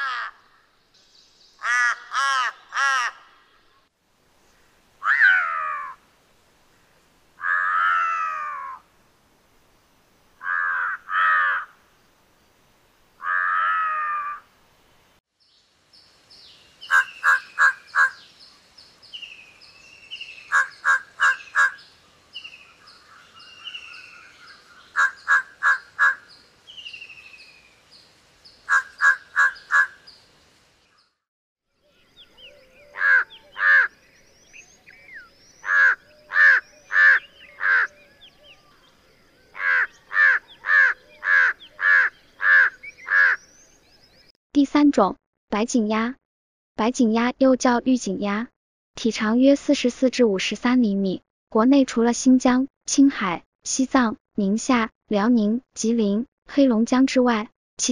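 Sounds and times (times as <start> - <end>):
crow cawing: 0.0 - 0.5, 1.6 - 3.3, 5.0 - 6.0, 7.4 - 8.8, 10.4 - 11.8, 13.2 - 14.5, 16.8 - 18.3, 20.4 - 21.8, 22.8 - 26.3, 28.7 - 30.0, 32.9 - 34.0, 35.6 - 38.0, 39.6 - 43.4
small birds chirping: 15.4 - 44.4.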